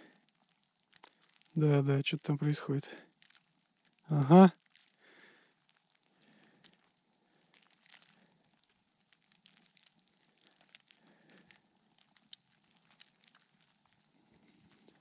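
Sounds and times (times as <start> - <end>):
faint crinkling clicks: 0.0 - 15.0.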